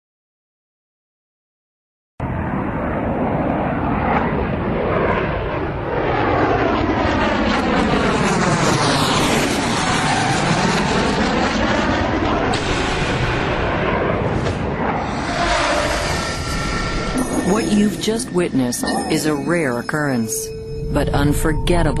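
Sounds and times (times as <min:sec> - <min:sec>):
jet engines roaring: 0:02.2 - 0:22.0
jet whooshing tones: 0:12.6 - 0:22.0.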